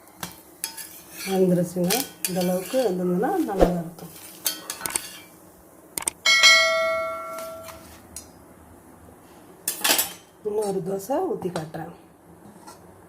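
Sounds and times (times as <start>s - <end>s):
metal vessel struck ringing: 6.2s - 7.7s.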